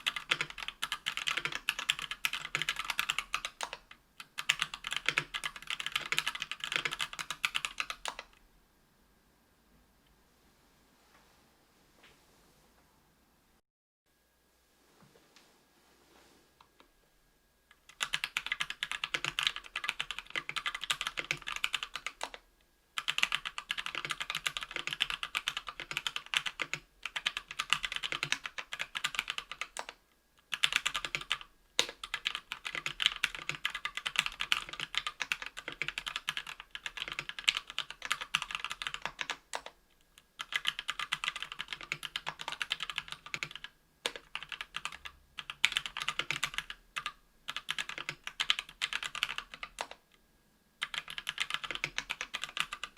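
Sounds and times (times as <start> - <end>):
fast typing on mechanical keyboard: 0.0 - 8.4, 17.9 - 22.4, 23.0 - 50.0, 50.8 - 52.9.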